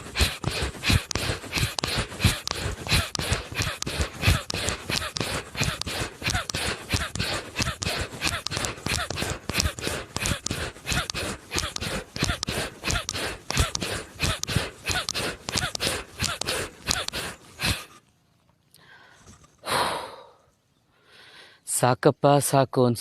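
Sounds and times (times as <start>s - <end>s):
rapid forceful nasal breathing: 0.0s - 18.0s.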